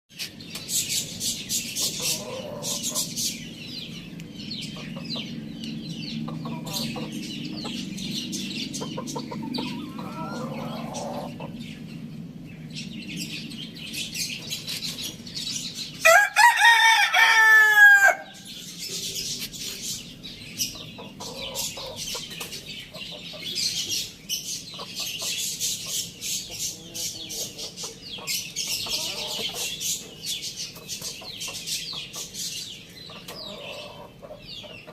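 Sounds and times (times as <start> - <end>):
high patter of ticks and chirps: 0.1 - 16.2, 18.3 - 34.9
chickens clucking: 0.2 - 12.2, 18.7 - 34.9
rooster crowing: 16.0 - 18.4.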